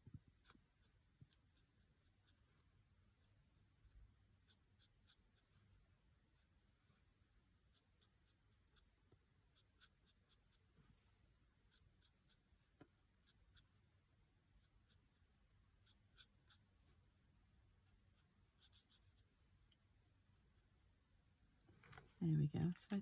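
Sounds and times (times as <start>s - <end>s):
marker scratching on card: 0.3s - 5.7s, 7.7s - 13.8s, 14.6s - 19.4s.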